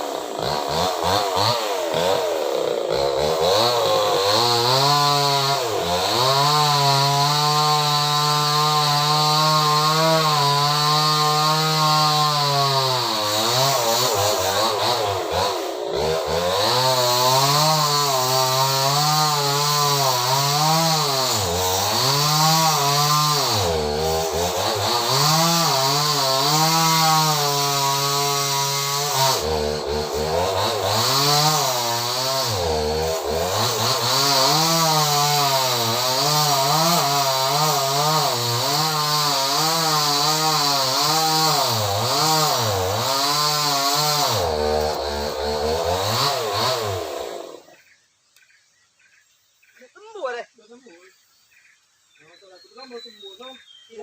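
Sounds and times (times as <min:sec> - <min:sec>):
chainsaw cutting tree trunk: 0:00.0 - 0:48.6.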